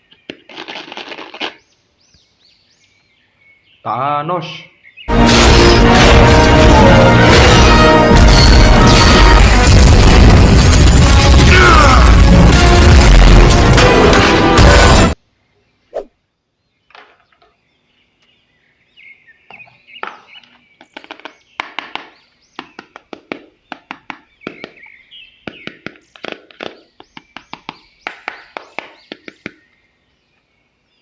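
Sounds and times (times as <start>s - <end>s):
birds chirping faintly: 0.0s - 5.1s, 15.2s - 31.0s.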